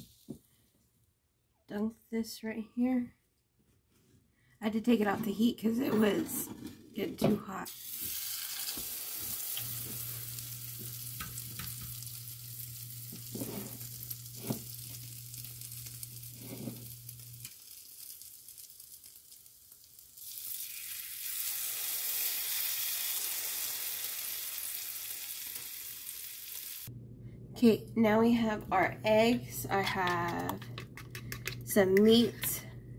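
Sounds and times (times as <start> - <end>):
food sizzling in frying pan: 7.7 - 26.9
low steady hum: 26.9 - 32.9.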